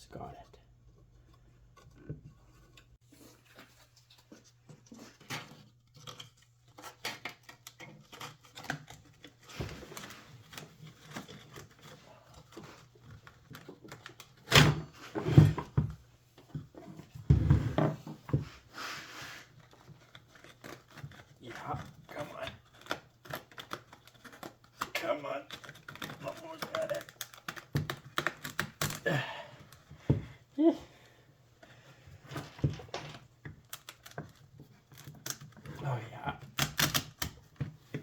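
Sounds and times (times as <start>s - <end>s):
clicks and knocks of handling parts: 32.2s - 35.8s.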